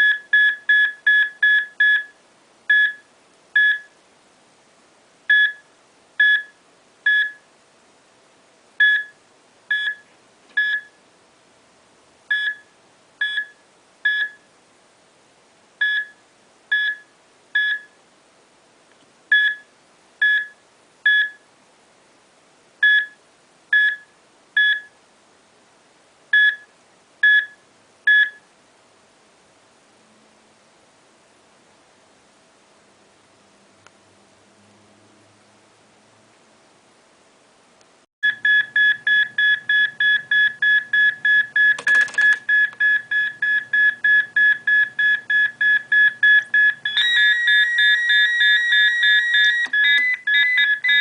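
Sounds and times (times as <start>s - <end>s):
short high-pitched electronic beeps: 44.8s - 51.0s.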